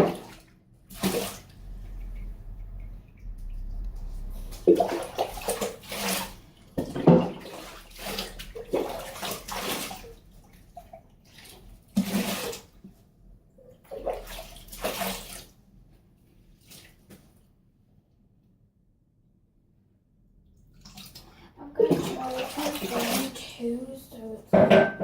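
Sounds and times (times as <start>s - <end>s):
bath water splashing and pouring: 0.0s - 12.8s, 13.8s - 15.6s, 20.6s - 24.4s.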